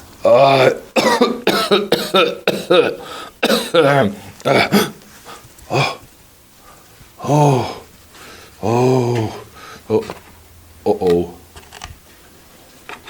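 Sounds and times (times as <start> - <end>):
man grunting: 7.2 - 7.9, 8.6 - 10.0
man calling: 8.6 - 10.2, 10.8 - 11.4.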